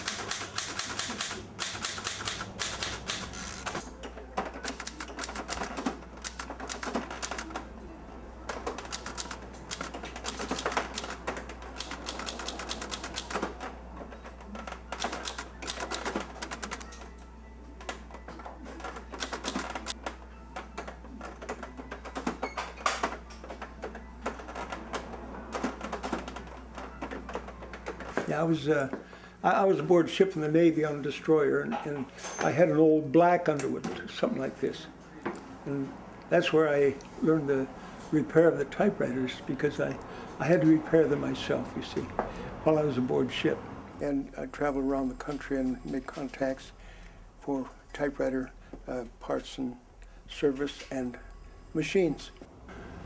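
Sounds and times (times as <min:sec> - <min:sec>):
typewriter keys clacking: 0:00.0 - 0:03.9, 0:04.6 - 0:07.6, 0:08.5 - 0:13.7, 0:14.5 - 0:17.1, 0:18.7 - 0:20.0.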